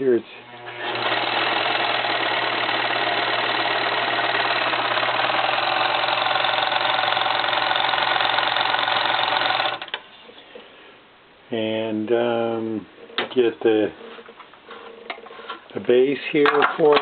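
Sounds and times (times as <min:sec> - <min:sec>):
sewing machine whirring: 0:00.5 - 0:10.0.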